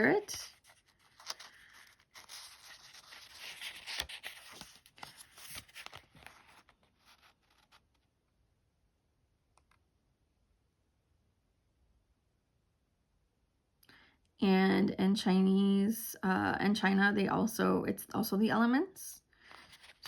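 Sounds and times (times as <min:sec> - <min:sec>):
paper and card rustling: 0:00.0 - 0:08.1, 0:19.4 - 0:20.0.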